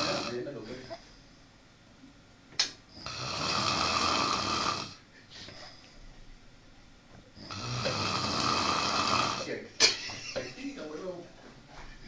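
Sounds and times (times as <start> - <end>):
person snoring loudly: 0.0 - 0.4, 2.9 - 5.0, 7.4 - 9.5
sharp click: 2.5 - 2.8.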